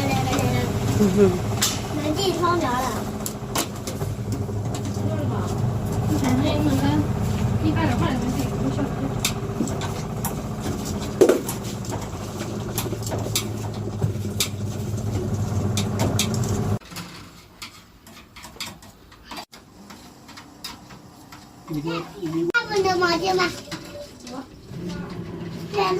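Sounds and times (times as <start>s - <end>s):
motor hum: 0.0s - 16.8s
handling noise: 0.0s - 18.0s.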